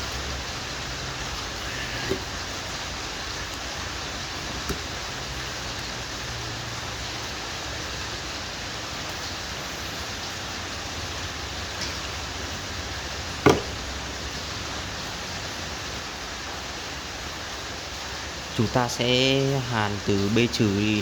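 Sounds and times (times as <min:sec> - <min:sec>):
steady hiss: 0:00.0 - 0:21.0
sharp knock: 0:13.4 - 0:13.8.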